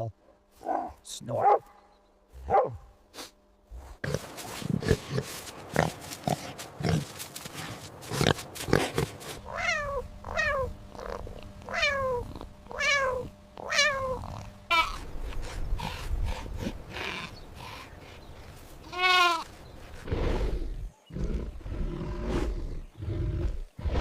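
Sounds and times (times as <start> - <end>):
cat meowing: 9.5 - 10.7, 11.7 - 14.9.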